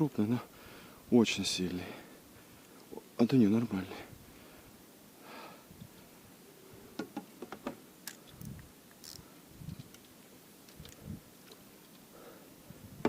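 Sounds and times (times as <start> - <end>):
breath: 0.5 - 1.0, 4.2 - 5.7, 12.1 - 12.9.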